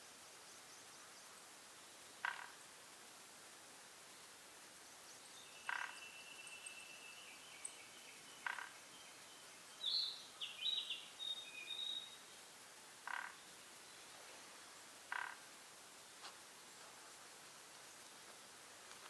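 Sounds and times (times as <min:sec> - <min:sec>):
birds whistling and chirping: 0:05.4 - 0:12.2.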